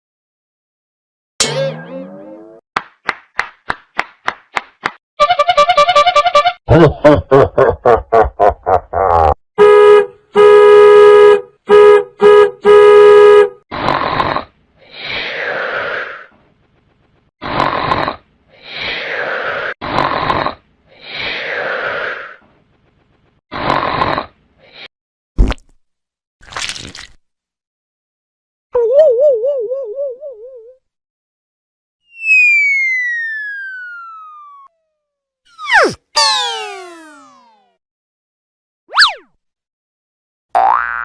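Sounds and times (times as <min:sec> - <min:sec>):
buzzy horn-like blasts: 0:09.6 - 0:13.6
short pitched blips: 0:35.5 - 0:37.7.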